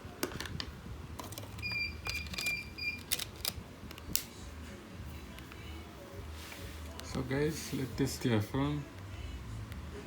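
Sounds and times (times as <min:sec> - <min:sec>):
plastic clicks of phone handling: 0:01.2 - 0:04.3.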